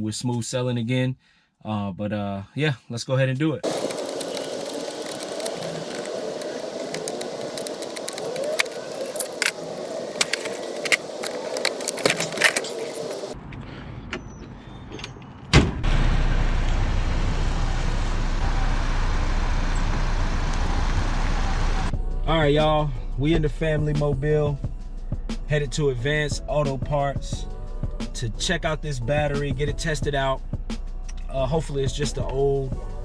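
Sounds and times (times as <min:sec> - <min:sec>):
sharp clicks and metallic clinks: 0:03.6 - 0:13.4
noisy background: 0:03.6 - 0:13.6
car engine rumbling: 0:03.6 - 0:26.3
car door shutting: 0:14.2 - 0:16.0.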